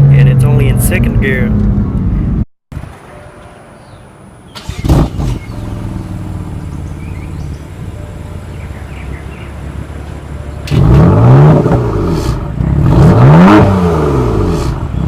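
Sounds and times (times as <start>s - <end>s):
car engine starting and idling: 4.3s - 15.0s.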